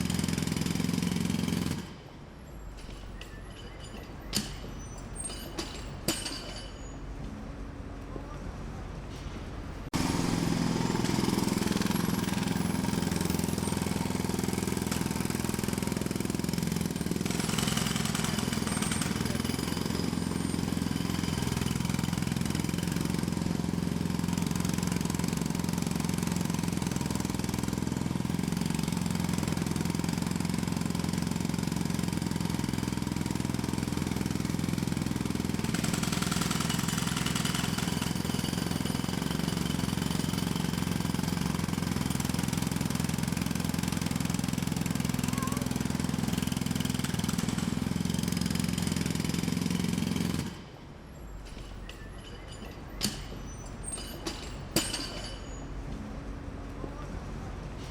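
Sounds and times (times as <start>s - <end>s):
jackhammer running: 0.0s - 2.1s, 9.9s - 50.9s.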